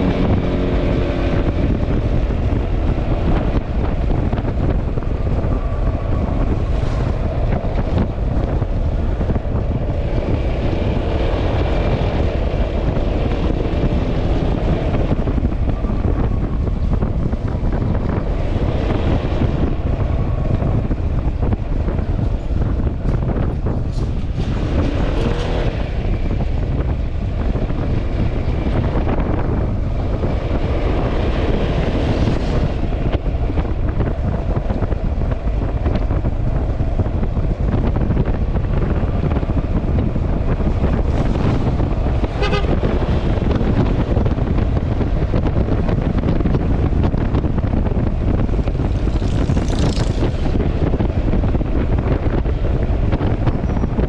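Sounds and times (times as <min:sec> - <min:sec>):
road and engine noise: 0:00.0 - 0:54.0
wind buffeting on microphone: 0:00.0 - 0:54.0.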